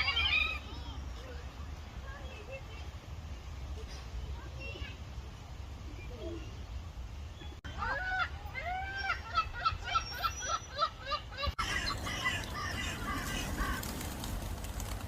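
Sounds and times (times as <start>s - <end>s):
gull calling: 7.7s - 13.9s.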